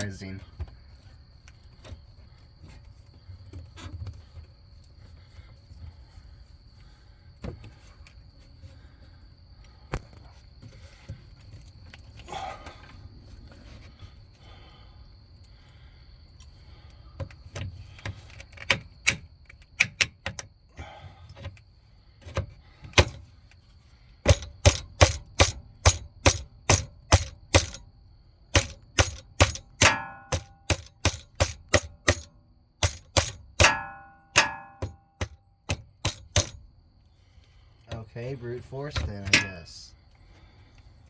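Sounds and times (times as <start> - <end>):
tool knocking on metal clamp: 24.3 - 27.8, 28.5 - 36.6.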